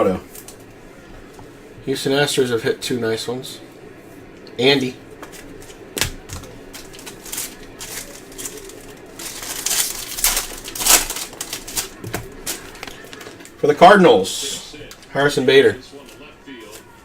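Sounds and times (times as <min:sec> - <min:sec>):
cards and packaging rustling: 0:05.2 - 0:13.7.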